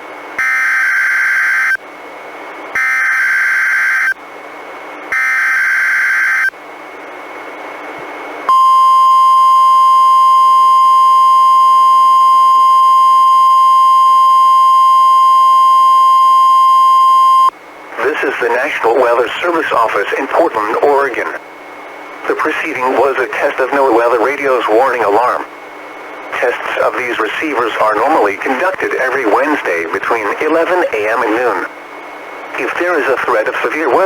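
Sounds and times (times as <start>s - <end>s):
steady warning alarm tone: 0.4s - 1.8s, 2.7s - 4.2s, 5.1s - 6.5s, 8.5s - 21.4s.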